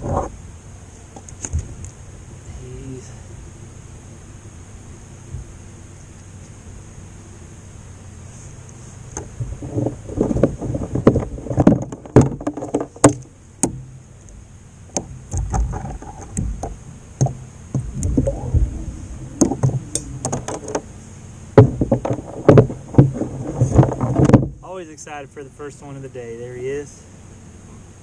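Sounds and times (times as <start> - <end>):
knocks and bumps on kayak: 9.2 - 13.9, 14.9 - 20.9, 21.5 - 24.6.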